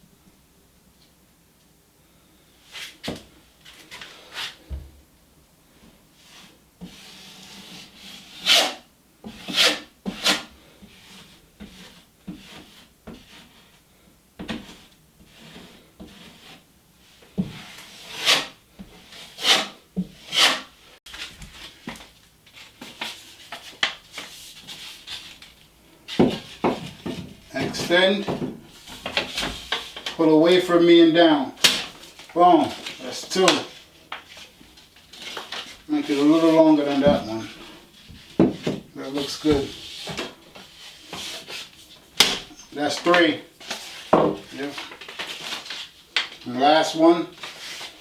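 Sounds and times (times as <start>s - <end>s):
rubbing and scraping on drywall: 6.2s - 48.0s.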